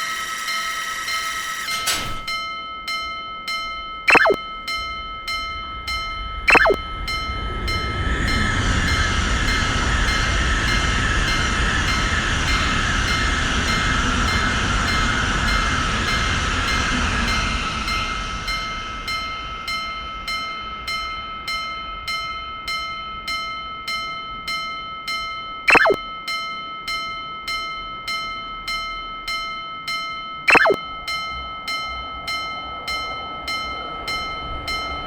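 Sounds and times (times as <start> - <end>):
railroad crossing bell ringing: 0.0 - 35.0
falling whistle sound effect: 4.1 - 4.4, 6.5 - 6.8, 25.7 - 26.0, 30.5 - 30.8
train passing with rumbling rush: 4.7 - 23.2, 31.0 - 35.0.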